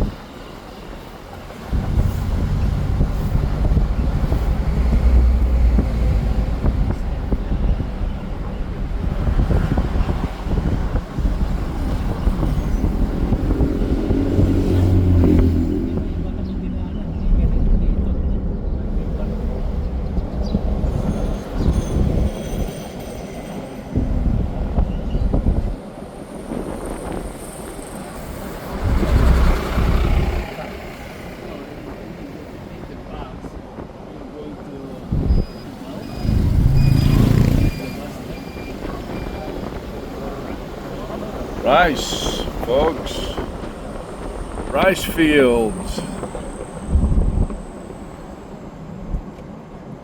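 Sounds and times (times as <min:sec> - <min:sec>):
vehicle engine and road rumble: 0:01.2 - 0:22.2, 0:35.0 - 0:49.3
wind buffeting microphone: 0:01.5 - 0:22.3
low rumble: 0:01.7 - 0:09.4.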